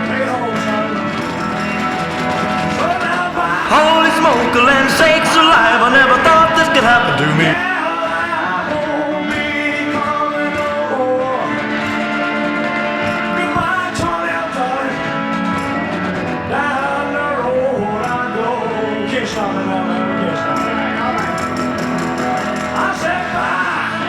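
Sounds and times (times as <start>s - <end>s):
lead guitar bending phrases: 0.0s - 24.0s
rock band accompaniment: 0.0s - 24.0s.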